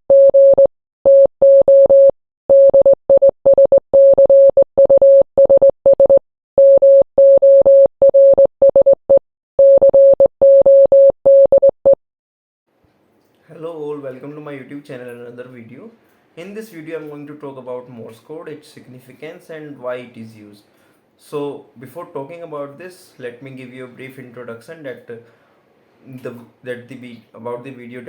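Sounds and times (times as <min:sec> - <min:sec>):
morse code beeping: 0:00.1 - 0:11.8.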